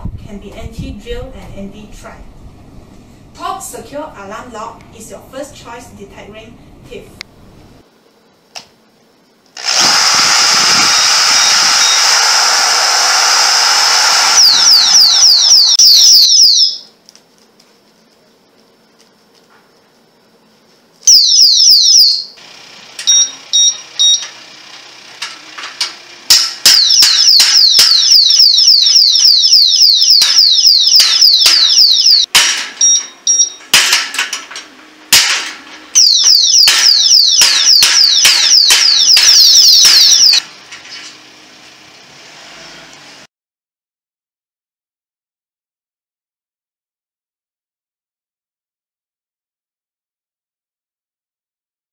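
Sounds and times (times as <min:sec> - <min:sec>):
high-pitched alarm siren: 0:10.2 - 0:16.9, 0:21.1 - 0:22.4, 0:23.0 - 0:24.4, 0:26.6 - 0:33.7, 0:35.9 - 0:40.4
short beeps: 0:23.1 - 0:24.3, 0:32.8 - 0:33.6.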